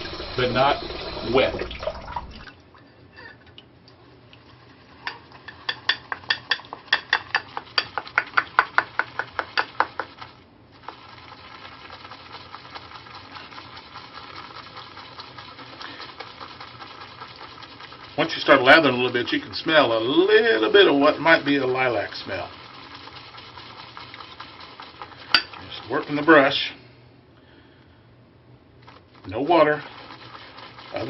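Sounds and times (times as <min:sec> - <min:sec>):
shaving brush knocking on soap: 0:05.7 - 0:11.1
shaving brush swishing: 0:29.2 - 0:31.0.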